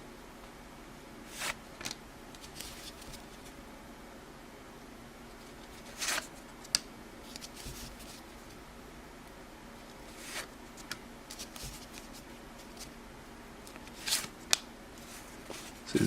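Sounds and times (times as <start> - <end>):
cardboard cards swishing: 5.7 - 6.3, 7.3 - 8.2, 10.1 - 12.9, 13.8 - 14.4.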